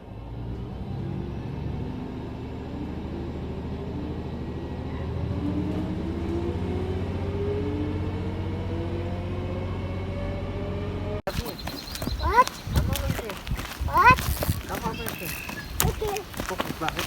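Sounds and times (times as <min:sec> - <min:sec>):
engine revving up: 0:00.0 - 0:11.3.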